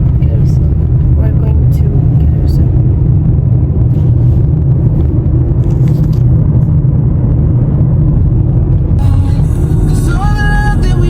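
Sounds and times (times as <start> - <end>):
car driving from inside cabin: 0.0 - 11.0
music: 9.0 - 11.0.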